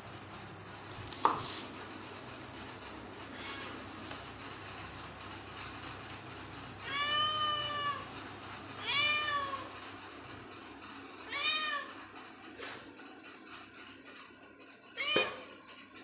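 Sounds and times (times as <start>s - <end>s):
cat meowing: 3.3s - 3.8s, 6.8s - 8.1s, 8.8s - 9.7s, 11.2s - 12.0s, 15.0s - 15.5s.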